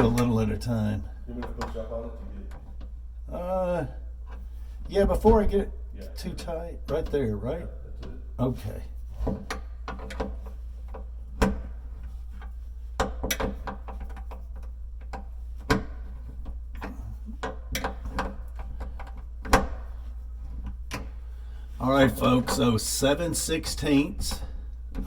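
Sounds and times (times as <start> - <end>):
steady low hum: 13.6 - 25.0.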